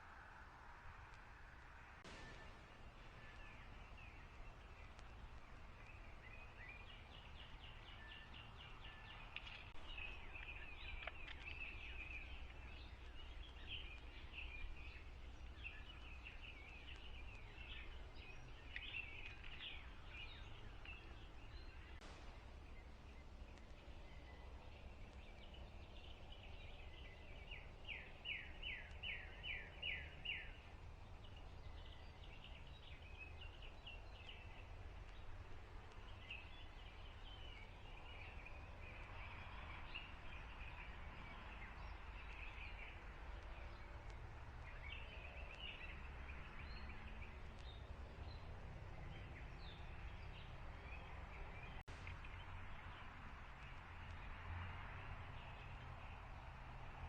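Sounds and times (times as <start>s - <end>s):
low rumble: 0.0s - 29.0s
birds chirping and trilling: 2.1s - 54.4s.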